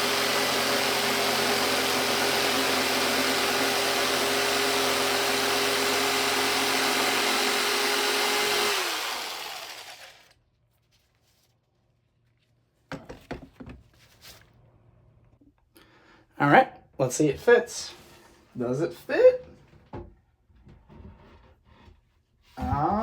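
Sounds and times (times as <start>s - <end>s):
motor winding down whine: 0.0s - 10.3s
jigsaw cutting wood: 0.0s - 10.4s.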